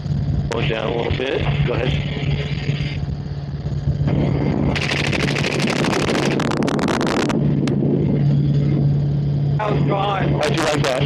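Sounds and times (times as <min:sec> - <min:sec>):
helicopter drone: 0:00.0 - 0:11.0
suppressed rifle shots: 0:04.7 - 0:06.4.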